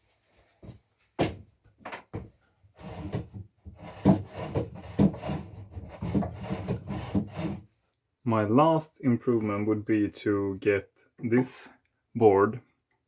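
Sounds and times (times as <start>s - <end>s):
wooden knocks: 1.2s - 7.6s.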